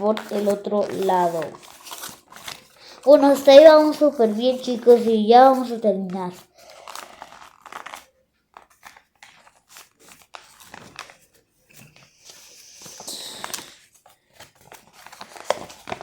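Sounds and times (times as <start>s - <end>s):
paper taps and scrapes: 0.0s - 6.4s
paper rustling and crinkling: 0.0s - 16.0s.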